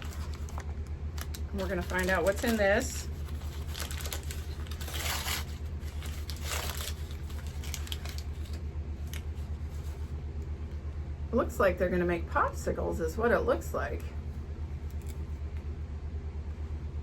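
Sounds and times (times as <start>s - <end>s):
wrapping rustling and tearing: 0.0s - 10.2s
low hum: 0.0s - 17.0s.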